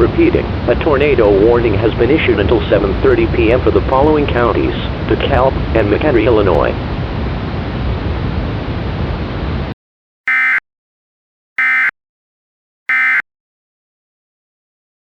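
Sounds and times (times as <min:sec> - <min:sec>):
digital data bursts: 0:12.9 - 0:13.2.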